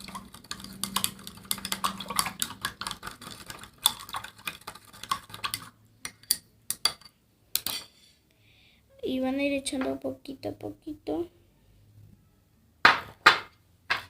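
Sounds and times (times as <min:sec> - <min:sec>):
utensil clicking against container: 0:00.0 - 0:06.9.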